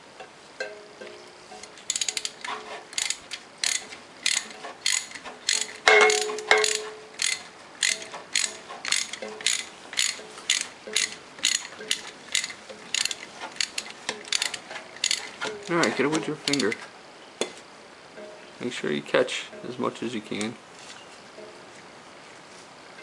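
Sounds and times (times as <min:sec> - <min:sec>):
sharp repeating clicks: 0:01.9 - 0:15.3.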